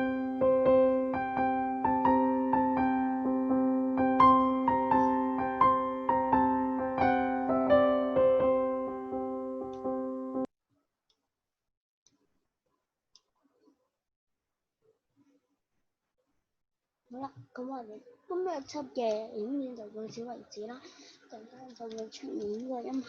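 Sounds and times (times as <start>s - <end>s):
piano music: 0.0s - 10.5s.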